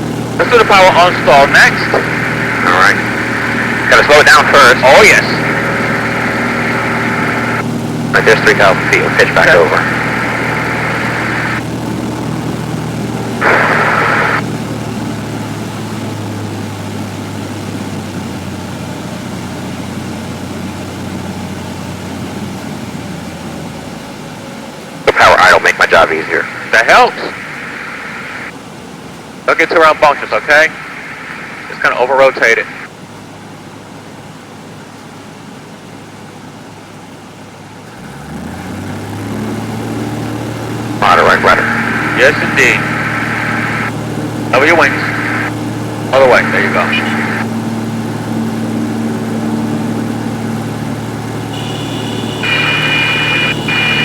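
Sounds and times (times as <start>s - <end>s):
light aircraft engine and propeller: 0.0s - 54.0s.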